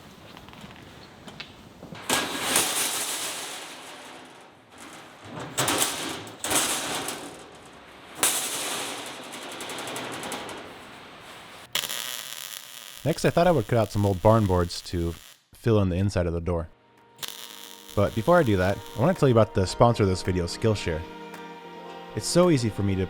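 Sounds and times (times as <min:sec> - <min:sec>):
arc welding crackling: 0:00.2 - 0:15.5, 0:17.2 - 0:19.6.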